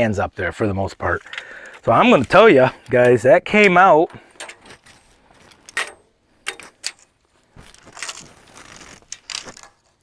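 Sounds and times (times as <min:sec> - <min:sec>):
metal scraping and rattling: 0:04.3 - 0:10.0.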